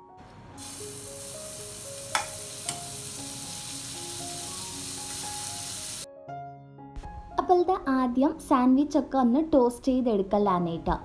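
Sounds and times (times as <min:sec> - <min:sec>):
light background music: 0:00.0 - 0:11.0
food sizzling in a pan: 0:00.6 - 0:06.1.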